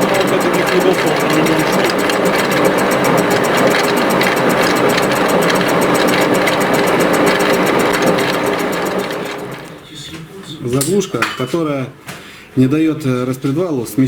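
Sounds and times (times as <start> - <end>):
petrol engine idling: 0.0 - 9.8
rapid ticking engine knock: 0.0 - 9.8.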